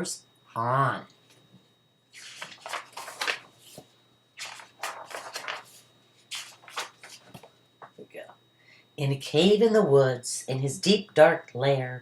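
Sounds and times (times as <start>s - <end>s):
paper rustling and crackling: 2.1s - 8.0s.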